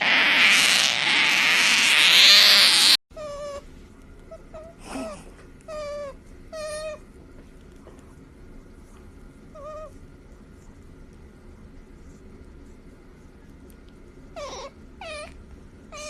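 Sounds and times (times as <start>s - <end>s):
otter whining calls: 0.0s - 3.0s
otter squealing: 0.0s - 3.4s.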